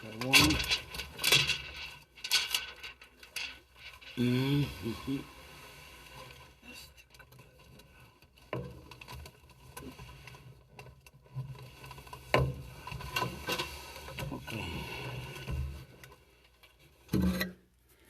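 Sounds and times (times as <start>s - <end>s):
tape rustling: 0.0s - 4.2s.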